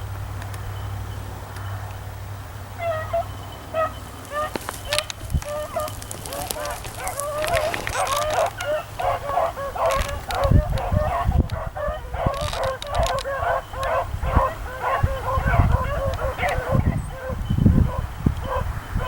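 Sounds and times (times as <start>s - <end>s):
hounds baying: 2.8s - 19.0s
sharp clicks: 4.5s - 10.9s, 12.3s - 14.0s.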